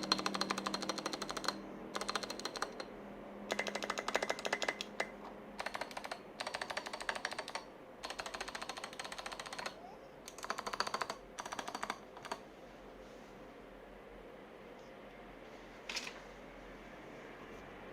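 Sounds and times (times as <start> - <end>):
fast typing on clicky keyboard: 0.0 - 2.9, 3.5 - 12.4.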